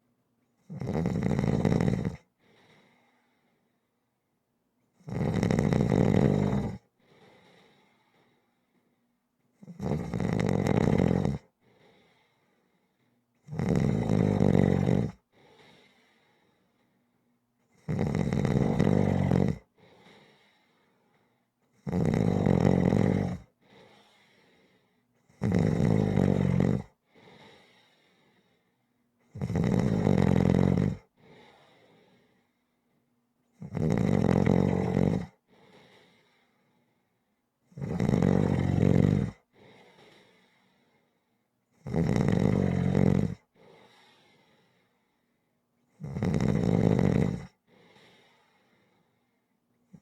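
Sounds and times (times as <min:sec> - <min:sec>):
person snoring: 0:00.7 - 0:02.2, 0:05.0 - 0:06.9, 0:09.6 - 0:11.5, 0:13.5 - 0:15.2, 0:17.8 - 0:20.3, 0:21.8 - 0:24.2, 0:25.3 - 0:27.8, 0:29.3 - 0:31.6, 0:33.6 - 0:35.4, 0:37.7 - 0:39.4, 0:41.8 - 0:44.3, 0:46.0 - 0:48.1
faint short breath: 0:02.4 - 0:03.9, 0:07.0 - 0:09.0, 0:15.3 - 0:17.2, 0:23.6 - 0:25.1, 0:31.2 - 0:32.8, 0:35.5 - 0:37.1, 0:39.5 - 0:41.4, 0:43.6 - 0:45.4, 0:47.7 - 0:49.5.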